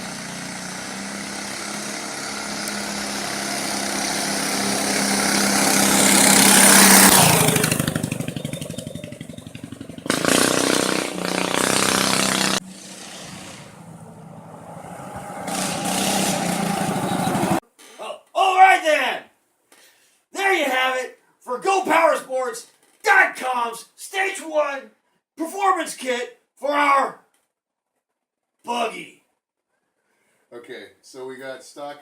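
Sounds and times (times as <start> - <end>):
go-kart engine at full throttle: 0.0 - 17.6.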